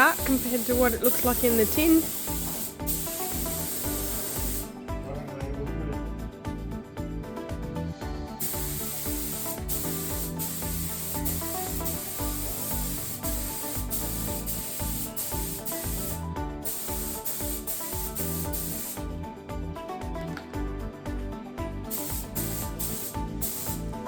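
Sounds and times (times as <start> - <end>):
spray gun hissing: 0.0 - 4.8, 8.4 - 19.1, 21.9 - 24.0
background music: 0.0 - 24.0.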